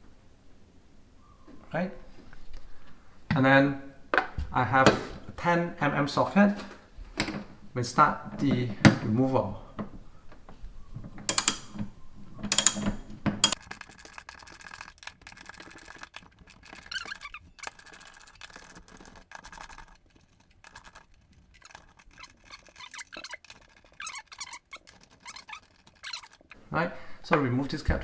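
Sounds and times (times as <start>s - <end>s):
tool knocking against metal: 11.1s - 13.6s
socket ratchet clicking: 11.3s - 11.9s, 12.5s - 19.9s.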